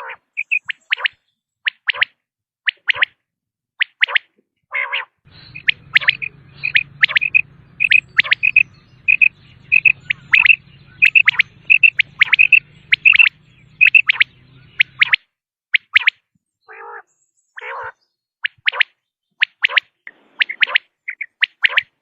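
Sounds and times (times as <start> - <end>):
quail calling: 0.0 - 3.2, 4.0 - 15.2, 15.8 - 22.0
faint low hum: 5.3 - 15.0.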